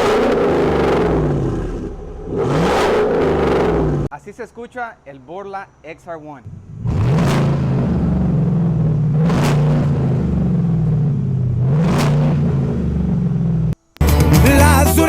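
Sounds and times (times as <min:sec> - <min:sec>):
pickup engine idling and revving: 0:00.0 - 0:04.1, 0:06.4 - 0:13.9
music: 0:13.9 - 0:15.0.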